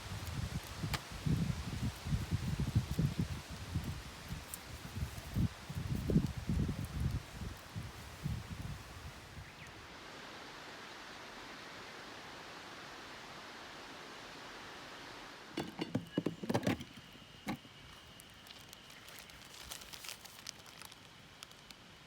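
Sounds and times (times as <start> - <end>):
wind noise: 0.0 - 9.7.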